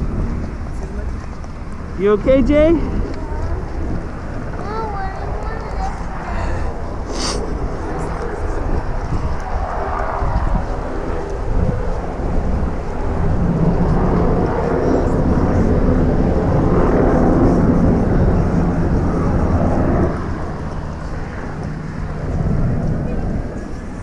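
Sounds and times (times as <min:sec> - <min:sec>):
low engine drone: 0:00.0 - 0:24.0.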